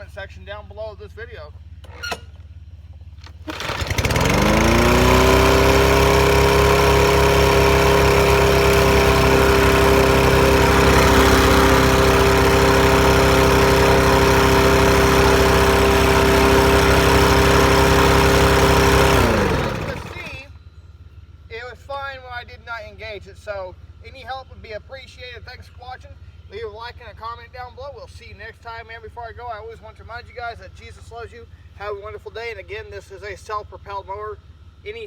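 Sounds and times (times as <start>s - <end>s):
lawnmower engine starting and running: 1.6s - 20.8s.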